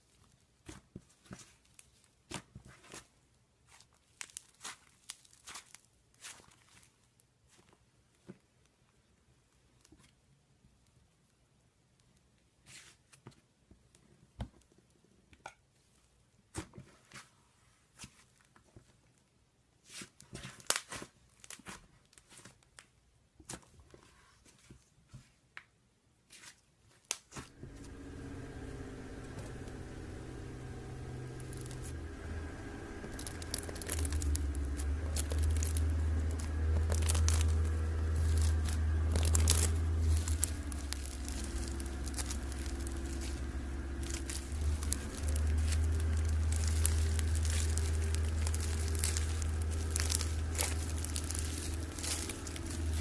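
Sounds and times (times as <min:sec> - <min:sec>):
slime crackling and popping: 0:27.1 - 0:53.0
steady low hum: 0:27.6 - 0:53.0.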